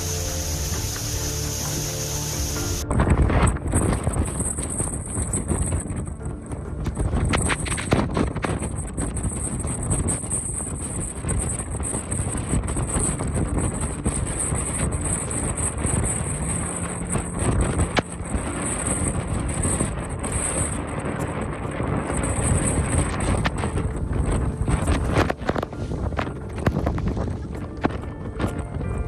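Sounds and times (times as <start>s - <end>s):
rain hiss: 0.0s - 2.8s
wind buffeting microphone: 0.0s - 29.0s.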